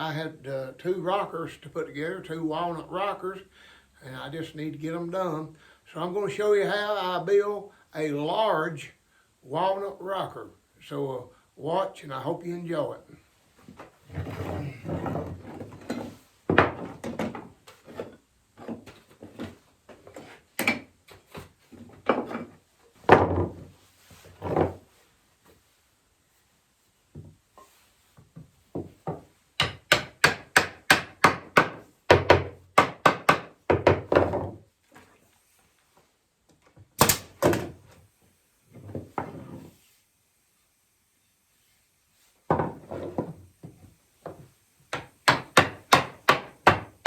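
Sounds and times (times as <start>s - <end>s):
hammer knocking on wood: 28.8s - 34.5s, 44.9s - 46.9s
sharp wooden cracks: 37.0s - 37.6s.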